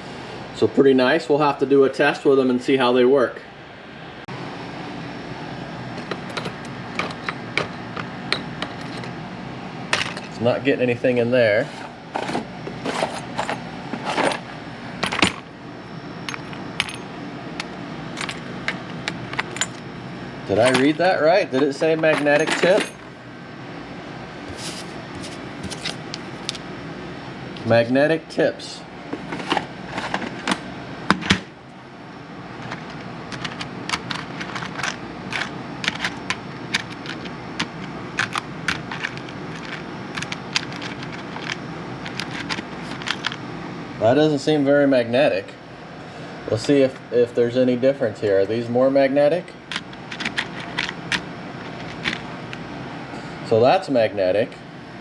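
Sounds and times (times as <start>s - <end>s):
steady low hum: 0.0s - 55.0s
screwdrivers clicking and clinking: 21.6s - 23.1s, 32.6s - 43.4s, 49.7s - 52.2s.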